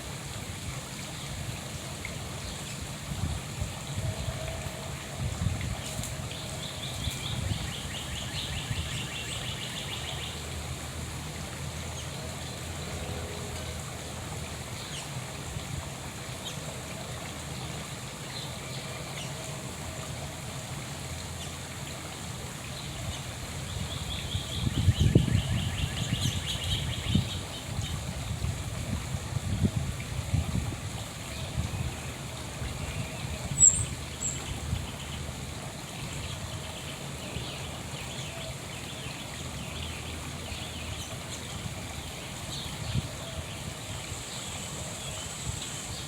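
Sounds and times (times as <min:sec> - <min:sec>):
songbird trilling: 0:33.1 - 0:34.6.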